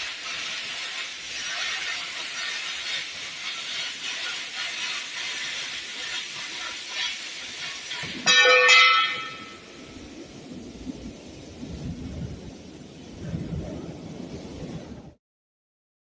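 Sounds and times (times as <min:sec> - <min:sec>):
steel sheet cutting hiss: 0:00.0 - 0:10.4
ringing pitched whine: 0:08.2 - 0:09.8.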